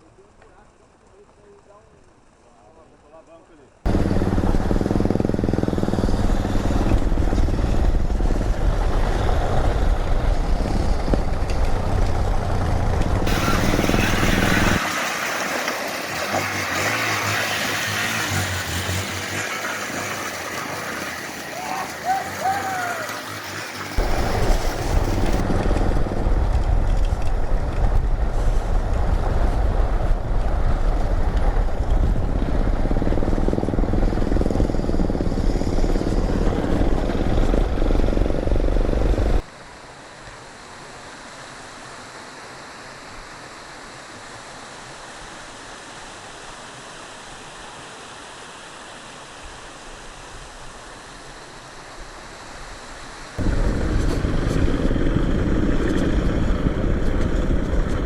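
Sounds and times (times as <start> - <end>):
motorcycle engine rumbling: 3.9 - 14.8, 16.5 - 39.4, 53.4 - 58.0
wind noise: 3.9 - 14.8, 23.9 - 39.4, 53.4 - 58.0.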